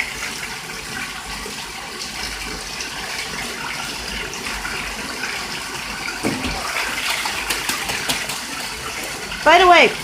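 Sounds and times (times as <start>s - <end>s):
tap water pouring into bathtub: 0.0s - 10.0s
goose splashing in water: 6.2s - 9.4s.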